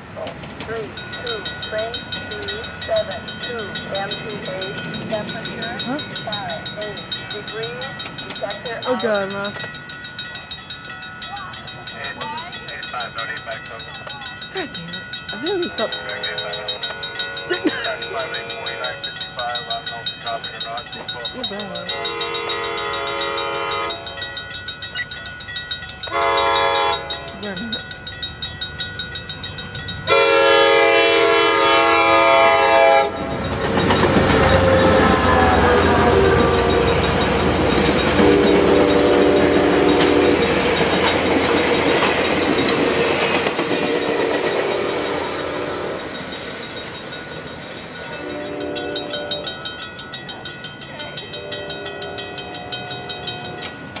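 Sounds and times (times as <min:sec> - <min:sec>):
train passing loudly: 0:00.0 - 0:54.0
level crossing bell dinging: 0:00.7 - 0:31.0, 0:32.2 - 0:43.7
train horn blasts: 0:15.9 - 0:19.1, 0:21.9 - 0:24.4, 0:26.1 - 0:27.4, 0:30.1 - 0:33.3, 0:34.4 - 0:40.3, 0:43.8 - 0:46.0, 0:48.1 - 0:49.4.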